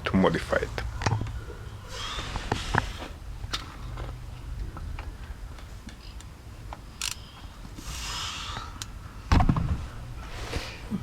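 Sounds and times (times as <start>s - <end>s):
metallic clicks of ratchet: 7.0s - 7.3s.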